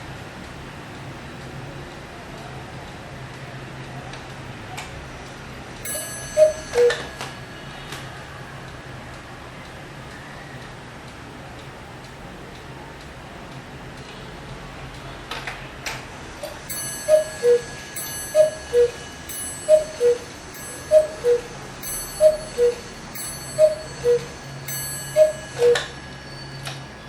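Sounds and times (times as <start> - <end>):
bell ringing: 5.8 - 8.4, 16.5 - 27.0
cuckoo clock calling: 5.8 - 9.0, 16.4 - 27.0
clock ticking: 5.8 - 14.1, 16.4 - 26.8.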